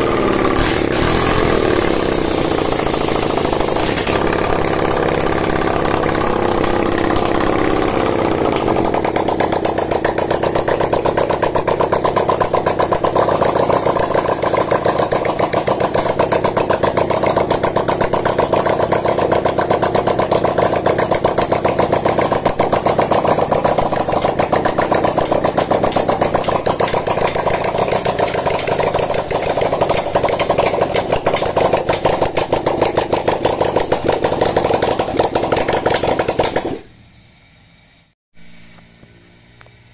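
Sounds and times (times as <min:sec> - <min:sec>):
engine running: 0:00.0 - 0:36.9.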